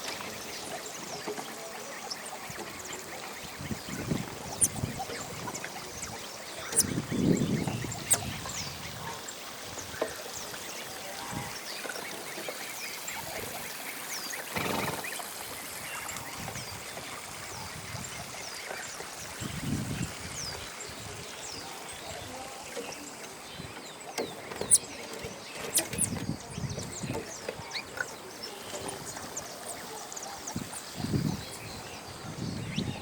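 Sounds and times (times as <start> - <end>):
high downward bird chirps: 5.6 - 8.8.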